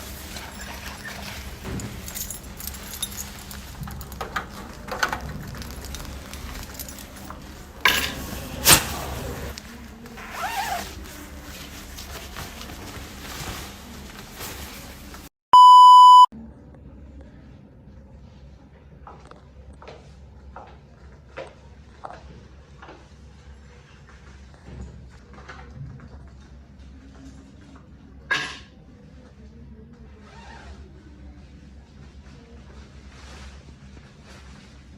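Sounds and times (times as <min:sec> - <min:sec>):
objects being handled: 0:00.0 - 0:15.3
electronic beep: 0:15.6 - 0:16.3.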